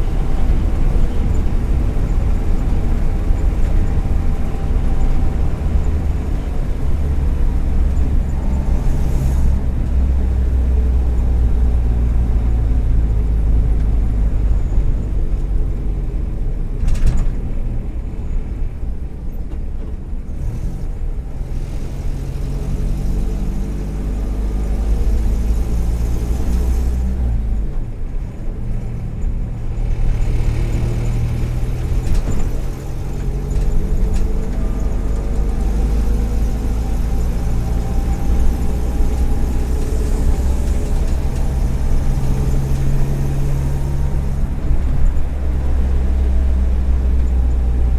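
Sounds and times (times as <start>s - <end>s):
car engine droning: 0.0s - 47.9s.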